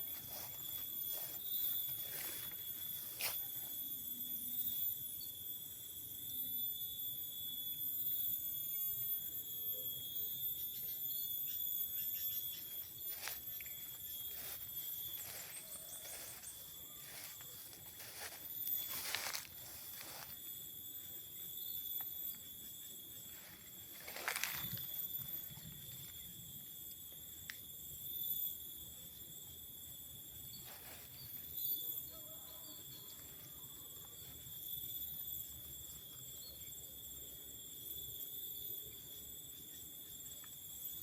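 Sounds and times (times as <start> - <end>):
footsteps in undergrowth: 0.0 - 3.6, 12.8 - 21.1, 23.2 - 25.8, 30.6 - 31.5
high-pitched insect chorus: 0.0 - 41.0
leaves rustling: 14.3 - 20.4, 23.4 - 24.8.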